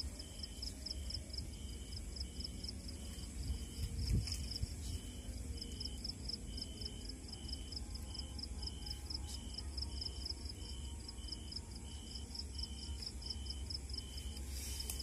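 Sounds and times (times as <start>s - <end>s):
steady low rumble: 0.0s - 10.4s
crickets chirping: 0.0s - 15.0s
lower insect call: 0.0s - 15.0s.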